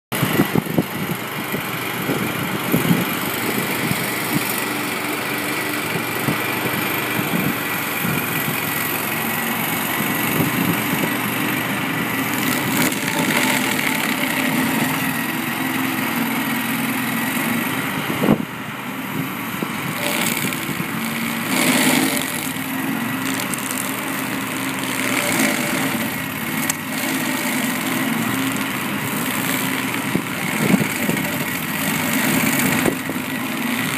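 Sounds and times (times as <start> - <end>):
stump grinder grinding: 0.2 - 33.9.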